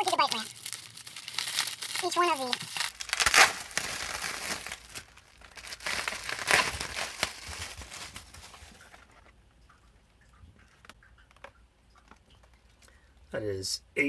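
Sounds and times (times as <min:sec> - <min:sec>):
plastic packaging crinkling: 0:00.0 - 0:09.3.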